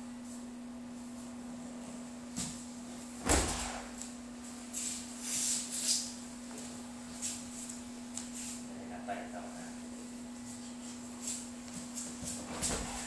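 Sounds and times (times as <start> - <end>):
steady hum: 0.0 - 13.0
swishes of feet and uniforms: 0.2 - 8.7, 10.3 - 13.0
body thudding on mat: 3.2 - 4.0, 12.1 - 13.0.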